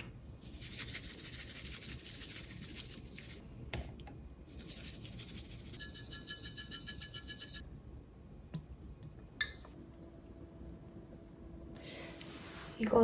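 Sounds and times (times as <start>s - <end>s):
hands rubbing food on surface: 0.4s - 3.5s, 4.5s - 7.6s.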